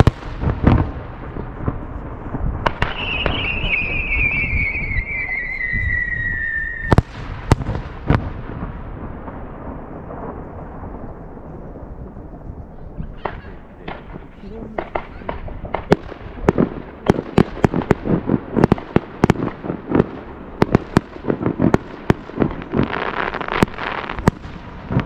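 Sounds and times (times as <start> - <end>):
fireworks bursting in loud cracks: 0.0 - 11.5, 13.2 - 25.0
whistling firework shell: 2.7 - 7.1.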